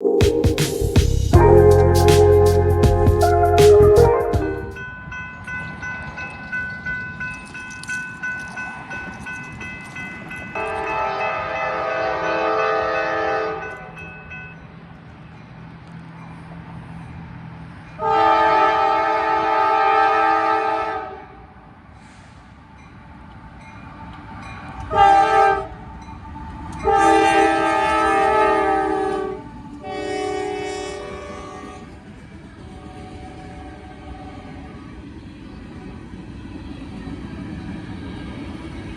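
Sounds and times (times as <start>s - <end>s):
train rumbling: 0.0s - 38.9s
locomotive air horn blasts: 1.4s - 4.6s, 10.6s - 13.7s, 18.0s - 21.4s, 24.9s - 25.8s, 26.8s - 31.9s.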